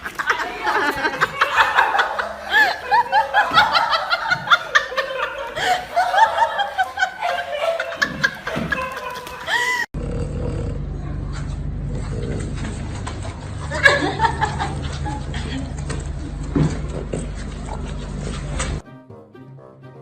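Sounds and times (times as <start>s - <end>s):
people laughing: 0.0s - 9.9s, 13.5s - 16.8s.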